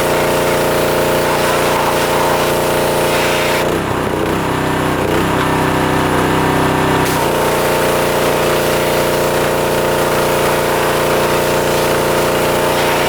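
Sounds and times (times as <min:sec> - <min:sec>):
pressure washer motor and pump: 0:00.0 - 0:13.0
spray hissing: 0:00.2 - 0:03.7, 0:07.0 - 0:13.0.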